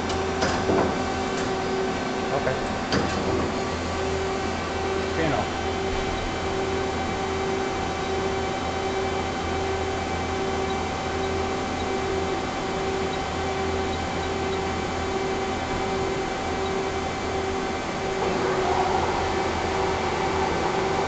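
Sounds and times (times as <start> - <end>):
lathe machine hum with whine: 0.0 - 21.0
pulsing tone: 18.2 - 21.0.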